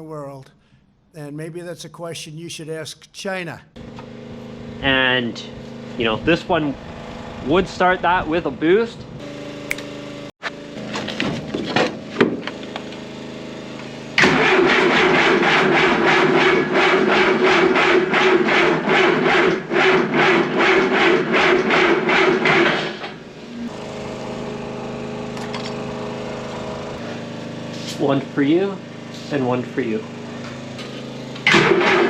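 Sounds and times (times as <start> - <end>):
diesel engine cranking on starter: 30.3 - 32.0.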